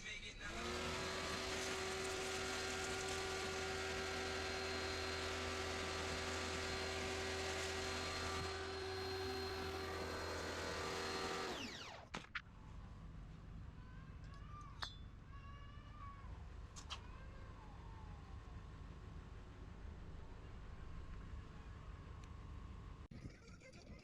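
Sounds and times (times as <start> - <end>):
power tool whining: 0.4 - 12.2.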